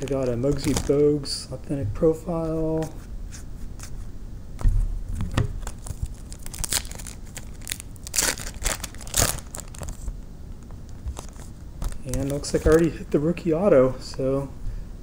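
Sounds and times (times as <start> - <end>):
foil wrappers crinkling and tearing: 0.0 - 1.3, 5.6 - 10.1, 10.9 - 13.0.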